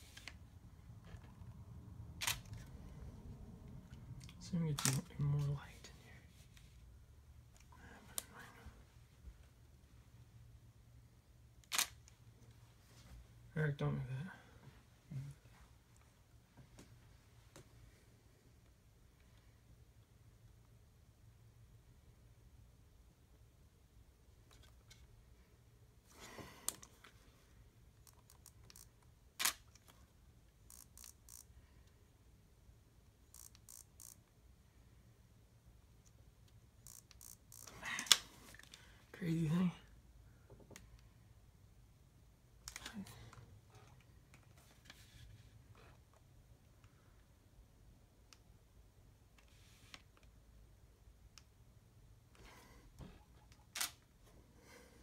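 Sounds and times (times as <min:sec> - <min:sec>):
camera shutter click: 0:02.2 - 0:02.5
camera handling sounds: 0:02.2 - 0:02.7.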